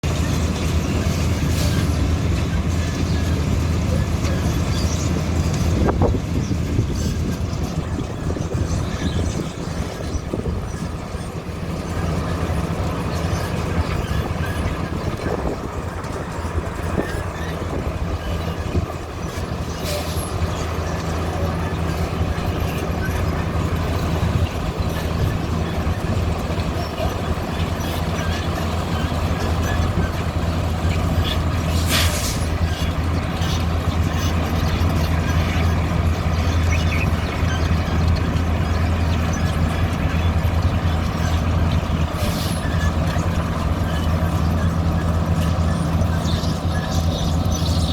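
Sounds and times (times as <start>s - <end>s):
heavy machinery engine droning: 0.0s - 47.9s
short hiss: 31.8s - 32.5s.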